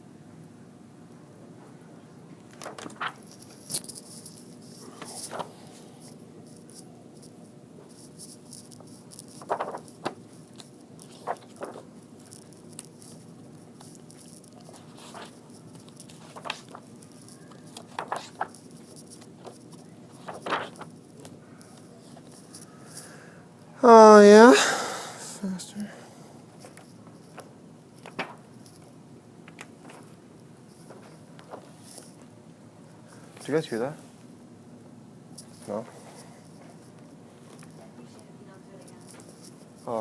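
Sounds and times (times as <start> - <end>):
low steady hum: 0.0 - 40.0
paper rustling and taps: 2.5 - 4.4, 8.0 - 22.7, 26.6 - 30.2, 30.8 - 32.3.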